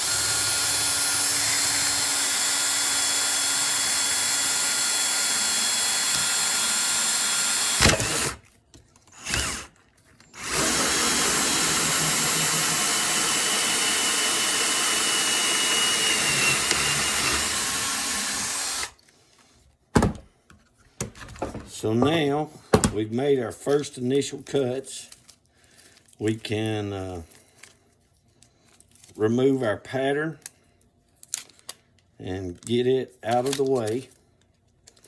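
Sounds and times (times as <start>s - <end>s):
oscillating multi-tool cutting plastic: 0.0s - 8.4s, 9.1s - 19.0s.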